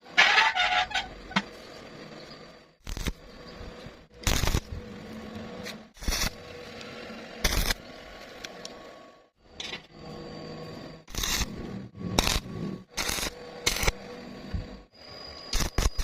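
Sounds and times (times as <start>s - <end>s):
short metal scrapes: 0.0s - 1.3s
steady background hum: 0.1s - 16.0s.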